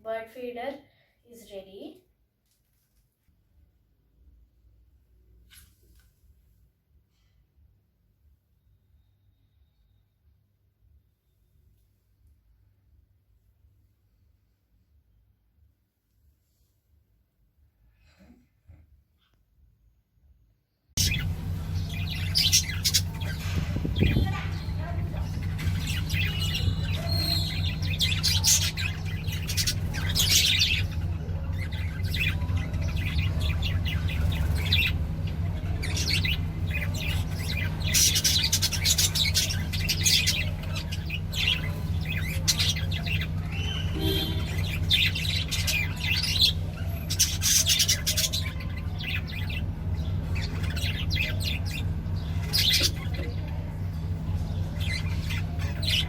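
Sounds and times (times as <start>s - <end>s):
small birds chirping: 21.0s - 56.0s
steady low hum: 21.0s - 56.0s.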